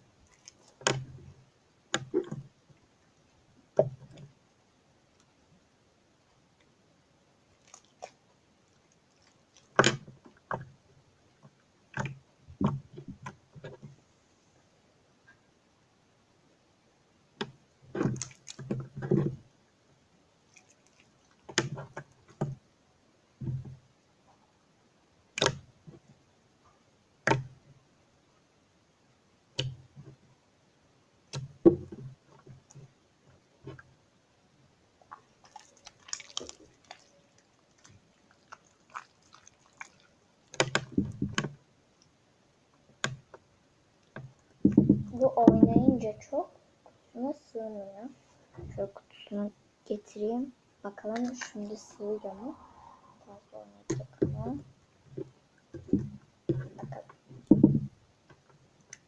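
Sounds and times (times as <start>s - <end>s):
slime squelching by hand: 0.2s - 1.2s, 7.5s - 10.0s, 18.0s - 19.2s, 20.5s - 22.0s, 35.0s - 41.2s.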